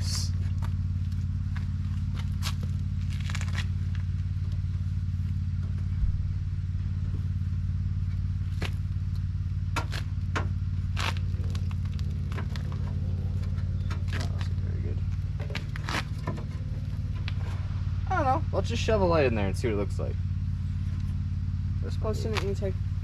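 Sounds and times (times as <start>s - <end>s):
steady low hum: 0.0s - 23.0s
clicks and scrapes of car parts: 0.5s - 4.7s, 8.5s - 17.8s.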